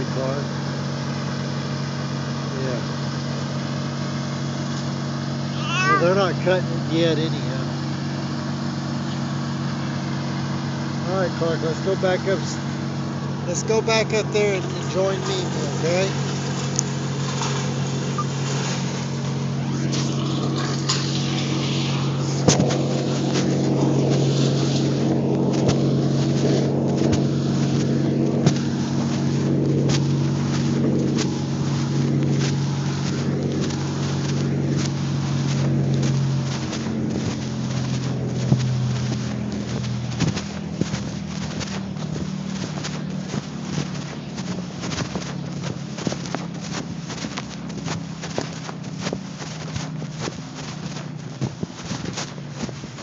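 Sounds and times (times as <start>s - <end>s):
power equipment engine running: 0.0s - 53.0s.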